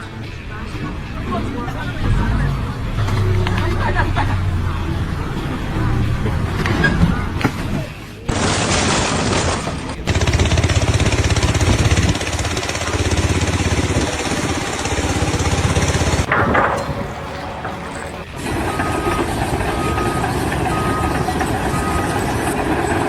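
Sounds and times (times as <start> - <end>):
construction machinery running: 0.0 - 23.0
reversing alarm beeping: 12.8 - 23.0.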